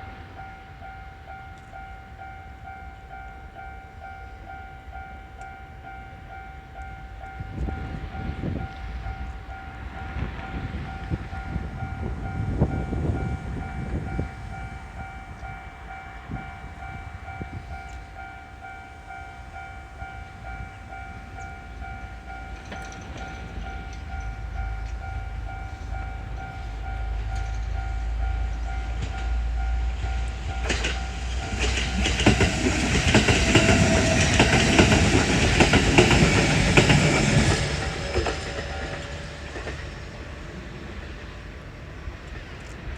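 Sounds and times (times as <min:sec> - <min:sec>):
electric train passing: 0:00.0 - 0:42.9
railroad crossing alarm ringing: 0:00.0 - 0:42.9
train wheels clattering over rail joints: 0:29.9 - 0:42.9.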